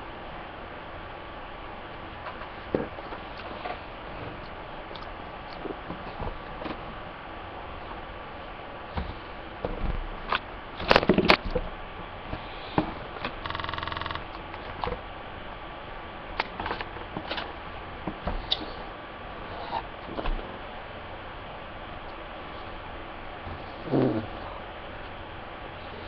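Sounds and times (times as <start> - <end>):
short buzzing tone: 13.4 - 14.3.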